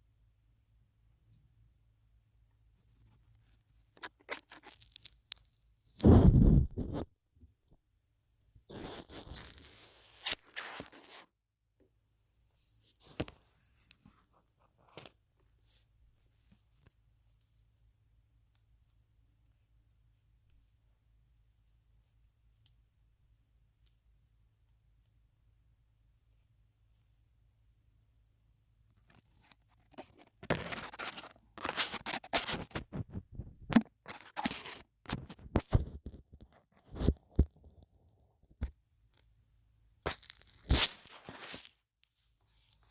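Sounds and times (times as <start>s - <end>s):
soft clicks and crackles: 2.5s - 6.1s, 12.7s - 17.8s, 21.4s - 22.9s, 40.0s - 42.9s
crunchy crackling on microphone: 3.1s - 7.2s, 8.7s - 11.3s, 29.0s - 39.3s, 40.0s - 41.8s.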